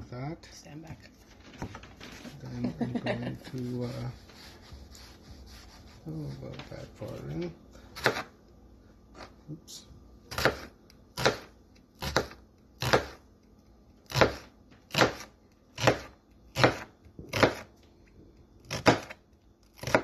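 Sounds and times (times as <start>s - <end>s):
knife cutting onion on board: 7.9s - 8.4s, 10.3s - 13.4s, 14.0s - 17.8s, 18.6s - 20.0s.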